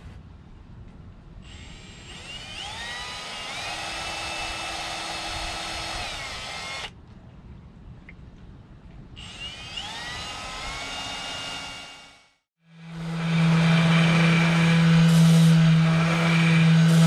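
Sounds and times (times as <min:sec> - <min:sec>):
power tool motor whining: 0:01.5 - 0:06.9, 0:09.2 - 0:12.2, 0:12.8 - 0:17.0.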